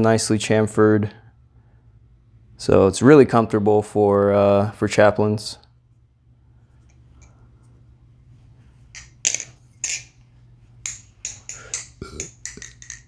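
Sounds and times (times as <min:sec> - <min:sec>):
butterfly knife clacking: 0:10.9 - 0:13.0.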